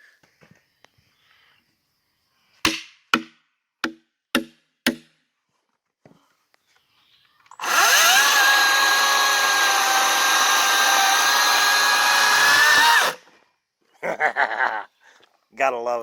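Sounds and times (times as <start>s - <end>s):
electric chainsaw motor whine: 7.6s - 13.2s.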